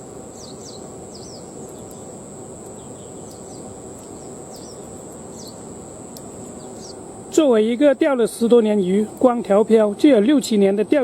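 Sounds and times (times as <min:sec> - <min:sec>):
low rushing background noise: 0:00.0 - 0:11.0
steady high-pitched whine: 0:00.0 - 0:11.0
small birds chirping: 0:00.3 - 0:07.2.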